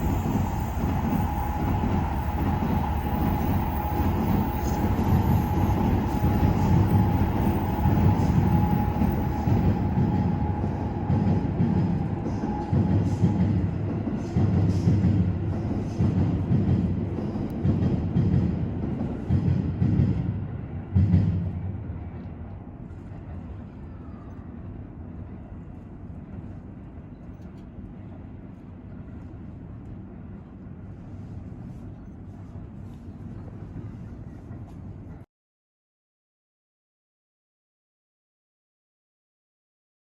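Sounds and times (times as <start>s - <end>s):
train rumbling with knocks: 0.0s - 35.2s.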